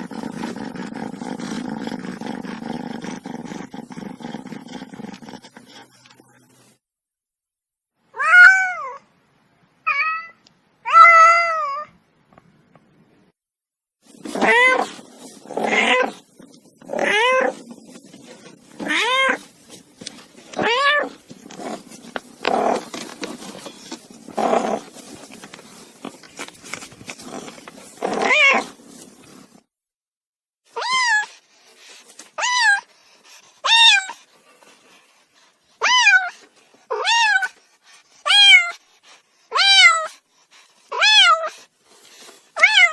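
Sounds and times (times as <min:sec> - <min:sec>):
cat yowling: 0:08.2 - 0:09.0, 0:09.9 - 0:11.9, 0:14.3 - 0:16.2, 0:16.9 - 0:17.6, 0:18.8 - 0:19.5, 0:20.6 - 0:21.2, 0:28.1 - 0:28.7, 0:35.8 - 0:36.3, 0:36.9 - 0:37.5, 0:38.3 - 0:38.8, 0:39.5 - 0:40.1, 0:40.9 - 0:41.5, 0:42.6 - 0:42.9.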